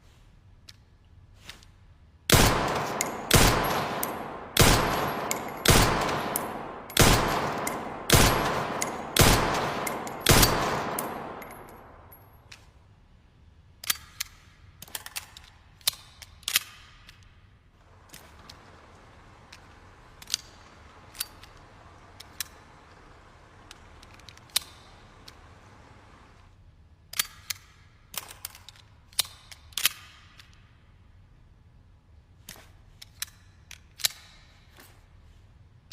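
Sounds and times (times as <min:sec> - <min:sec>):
handgun shots echoing: 0:02.3 - 0:12.4
sharp mechanical clicks: 0:02.3 - 0:12.8, 0:13.8 - 0:17.4, 0:18.0 - 0:25.7.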